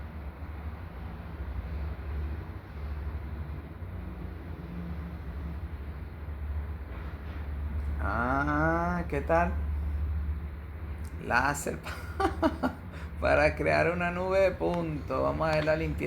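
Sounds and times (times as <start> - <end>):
steady low rumble: 5.7 - 16.0.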